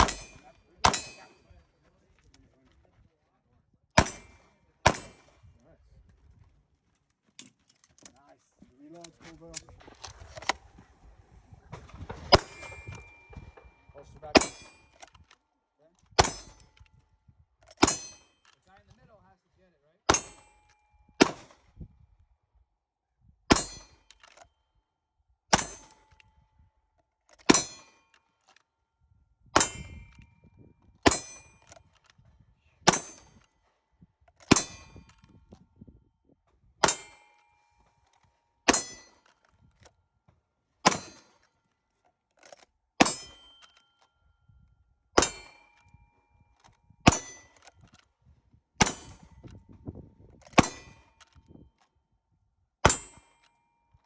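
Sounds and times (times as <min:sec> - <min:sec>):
pistol shots: 0:00.0 - 0:01.3, 0:04.0 - 0:05.3, 0:14.3 - 0:14.9, 0:16.2 - 0:16.6, 0:21.2 - 0:21.6, 0:47.1 - 0:47.6, 0:50.6 - 0:51.0
steel target ringing: 0:00.0 - 0:01.4, 0:12.3 - 0:15.0, 0:16.2 - 0:16.6, 0:17.8 - 0:18.3, 0:20.1 - 0:20.6, 0:23.5 - 0:24.0, 0:29.6 - 0:30.0, 0:31.1 - 0:31.6, 0:34.5 - 0:35.0, 0:36.8 - 0:37.4, 0:38.7 - 0:39.2, 0:43.0 - 0:43.7, 0:45.2 - 0:45.8, 0:47.1 - 0:47.6, 0:48.8 - 0:49.3, 0:50.6 - 0:51.1, 0:52.9 - 0:53.4.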